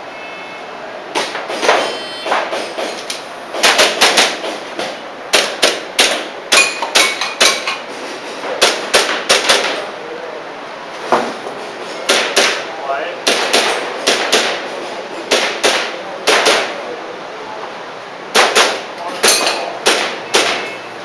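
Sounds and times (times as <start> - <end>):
faint short beep: 0.1 - 0.7, 1.8 - 2.4
airsoft pistol shots: 13.2 - 14.6, 15.3 - 16.8, 18.3 - 18.8, 19.8 - 20.7.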